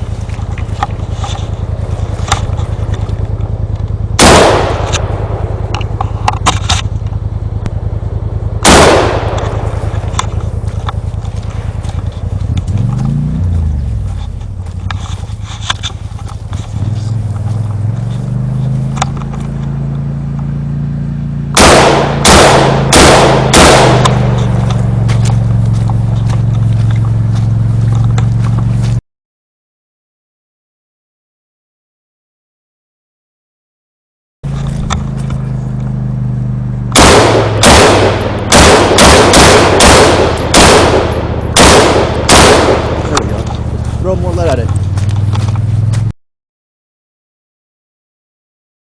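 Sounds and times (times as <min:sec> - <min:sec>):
engine running steadily: 0:00.0 - 0:29.0, 0:34.4 - 0:46.1
steady low hum: 0:00.0 - 0:29.0, 0:34.4 - 0:46.1
machine gun shots: 0:04.2 - 0:05.6, 0:08.6 - 0:10.0, 0:21.6 - 0:24.7, 0:36.9 - 0:43.6
gunshots: 0:04.2 - 0:05.8, 0:08.6 - 0:10.2, 0:21.6 - 0:25.4, 0:36.9 - 0:44.6.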